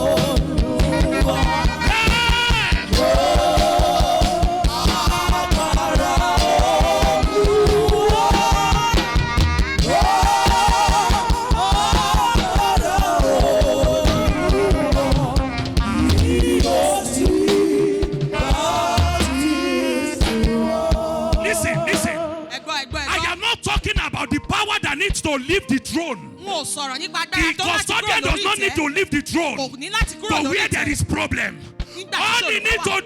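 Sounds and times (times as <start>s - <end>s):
band with fast drum beat: 0.0s - 22.4s
voices singing: 0.0s - 23.5s.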